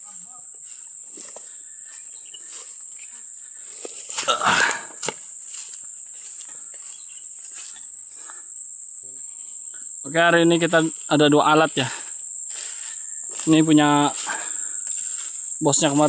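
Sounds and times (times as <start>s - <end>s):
rustling crunch: 0.0s - 7.9s
insects droning: 0.0s - 16.0s.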